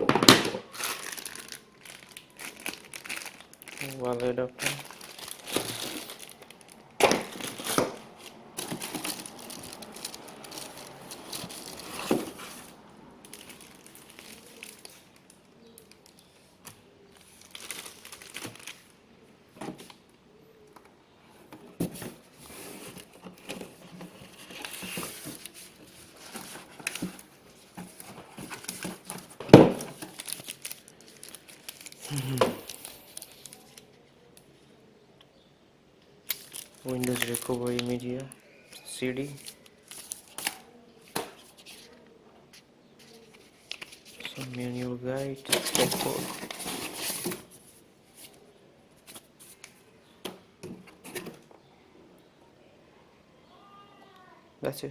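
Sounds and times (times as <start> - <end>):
plastic packaging crinkling: 0.6 - 19.0, 22.0 - 34.2, 36.2 - 42.0, 43.0 - 48.4.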